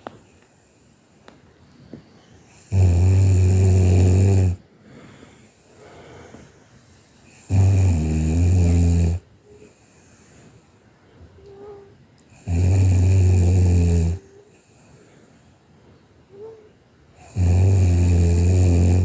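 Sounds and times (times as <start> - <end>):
person snoring: 2.5 - 4.6, 7.4 - 9.2, 12.4 - 14.3, 17.2 - 19.0
faint breathing: 4.5 - 7.6, 9.4 - 12.4, 14.1 - 17.4.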